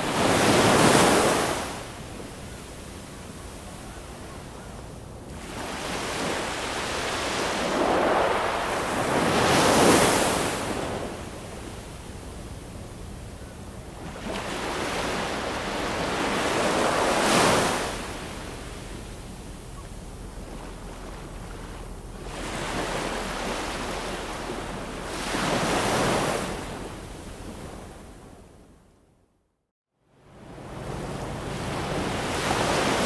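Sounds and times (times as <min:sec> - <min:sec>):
ocean waves washing in: 0:05.3 - 0:13.2, 0:13.8 - 0:28.4, 0:30.2 - 0:33.0.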